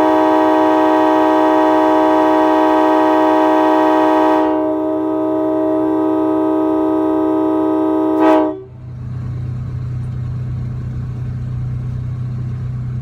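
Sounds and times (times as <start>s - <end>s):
train horn chord: 0.0s - 8.8s
engine humming: 0.0s - 13.0s.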